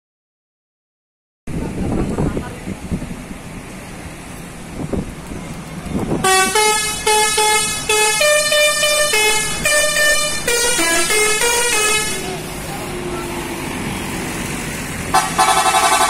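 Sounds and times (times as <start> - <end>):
low traffic noise: 1.5 - 16.0
multi-tone air horn melody: 6.2 - 12.4, 15.1 - 16.0.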